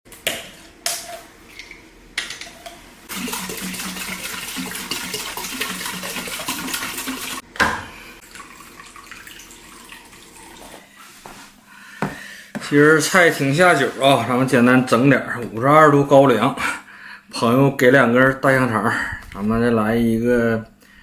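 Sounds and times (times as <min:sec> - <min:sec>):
water pouring: 0:03.1 - 0:07.4, 0:08.2 - 0:10.9.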